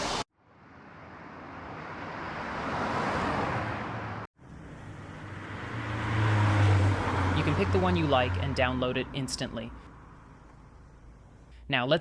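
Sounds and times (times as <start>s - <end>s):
car passing by: 0.0s - 11.2s
low engine hum: 4.4s - 11.7s.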